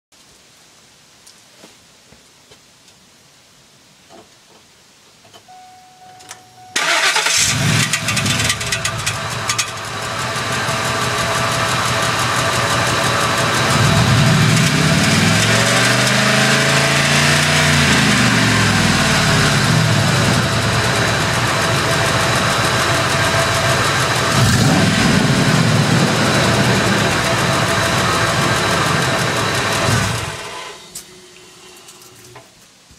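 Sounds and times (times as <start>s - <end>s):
rapid engine clicking: 6.8s - 30.6s
truck engine starting and revving: 6.8s - 31.7s.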